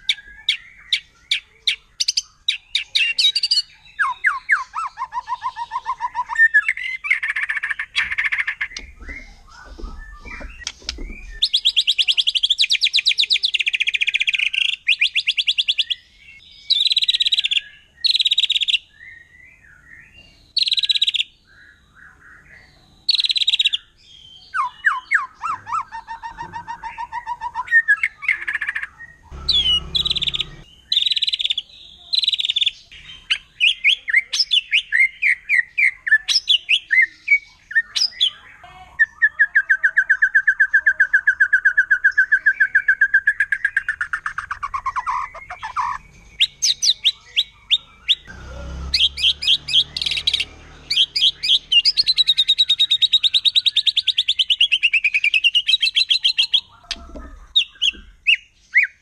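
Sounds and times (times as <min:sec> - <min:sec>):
bird singing whistles and trills: 0:00.0 - 0:48.3, 0:49.0 - 0:59.0
low rumbling noise: 0:29.2 - 0:30.7.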